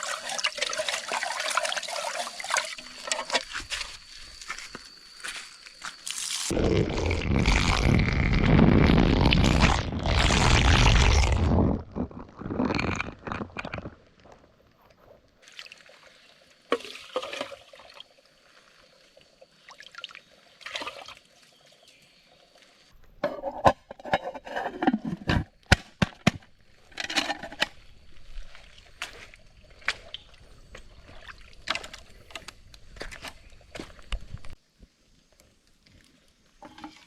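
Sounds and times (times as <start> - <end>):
water pouring and sloshing: 0.0 - 4.7, 6.1 - 21.9, 26.6 - 34.6.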